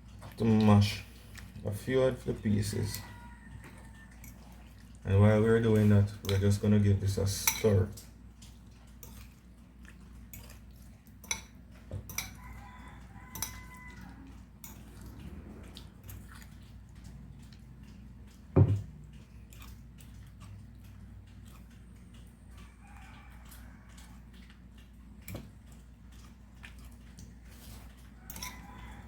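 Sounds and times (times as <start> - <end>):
utensil tapping a bowl: 18.5 - 18.9.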